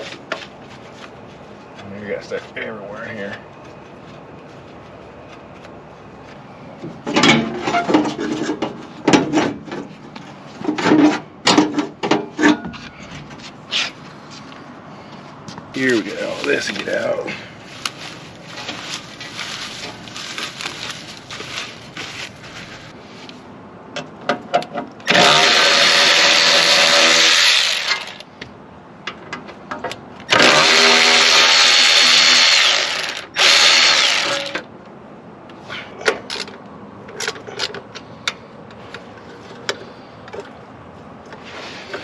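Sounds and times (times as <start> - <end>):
knocks and rustling of dry grass: 15.8 - 23.3
handheld motorized tool running: 25.1 - 28.2, 30.3 - 34.6.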